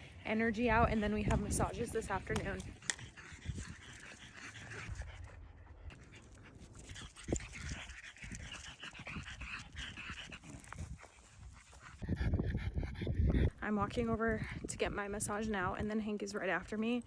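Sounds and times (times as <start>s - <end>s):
dog panting: 0.0s - 13.6s.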